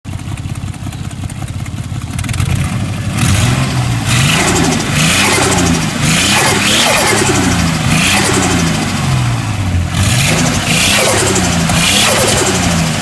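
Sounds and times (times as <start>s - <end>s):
car engine idling and revving: 0.1s - 13.0s.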